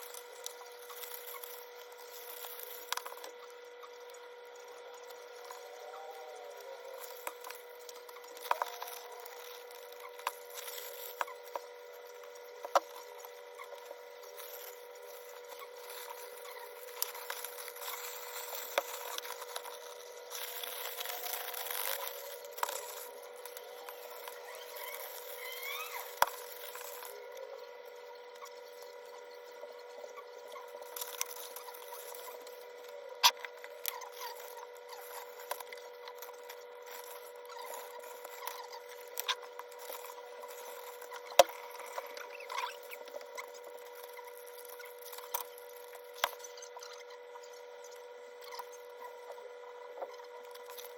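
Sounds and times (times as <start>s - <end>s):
steady hum: 0.0s - 50.9s.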